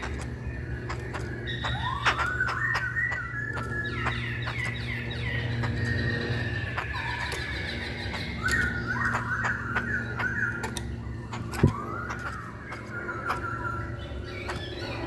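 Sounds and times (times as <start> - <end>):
bird whistling song: 0.0 - 15.0
steady low hum: 0.0 - 15.0
sharp clicks: 10.5 - 13.5.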